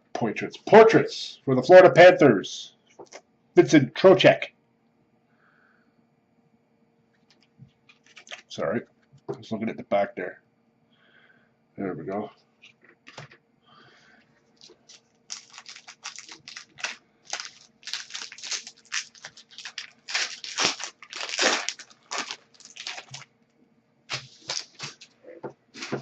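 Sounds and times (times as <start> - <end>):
wrapper crinkling and tearing: 7.9 - 8.5, 14.5 - 23.3, 24.1 - 25.2, 25.8 - 26.0.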